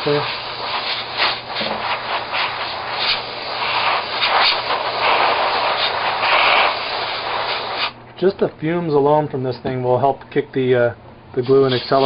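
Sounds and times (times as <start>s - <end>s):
compressed air hissing: 0.0s - 8.0s, 11.4s - 12.0s.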